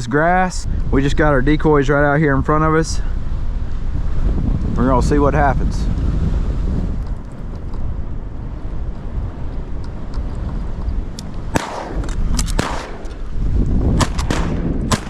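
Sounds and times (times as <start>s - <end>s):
wind rumbling on microphone: 0.0s - 15.0s
shotgun shots: 11.5s - 15.0s.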